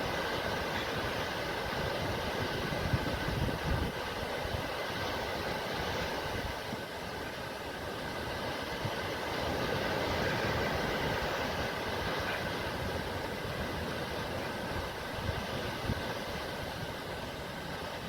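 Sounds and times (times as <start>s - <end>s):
sea waves washing on shore: 0.0s - 18.0s.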